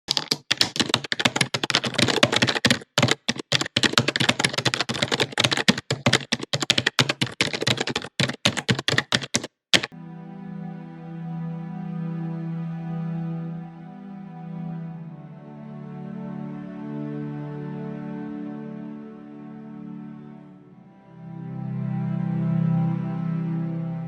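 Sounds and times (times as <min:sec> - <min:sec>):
keyboard typing clicks: 0:00.1 - 0:09.9
soft music with held tones: 0:09.9 - 0:24.0.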